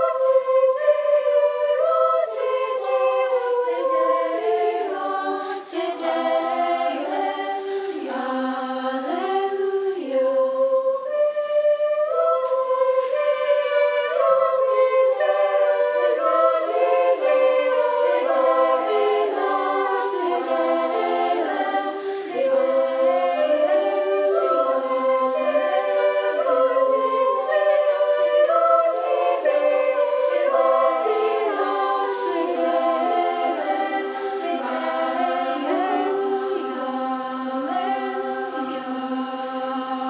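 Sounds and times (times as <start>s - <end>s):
children's choir singing a cappella: 0.0s - 40.0s.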